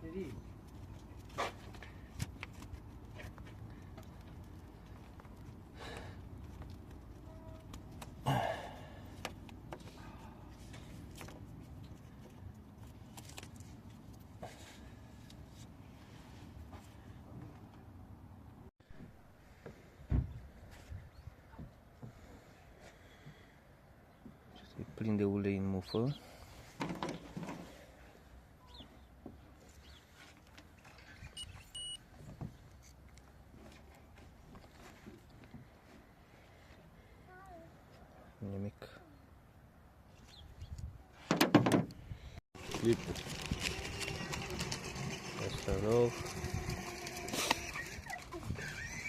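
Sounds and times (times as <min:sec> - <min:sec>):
short electronic beeps: 0:31.4 - 0:32.0.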